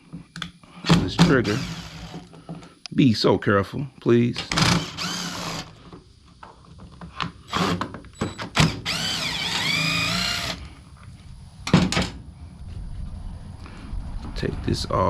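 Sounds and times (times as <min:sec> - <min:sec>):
electric screwdriver whining: 0:01.2 - 0:02.3, 0:04.5 - 0:05.8, 0:07.5 - 0:10.6.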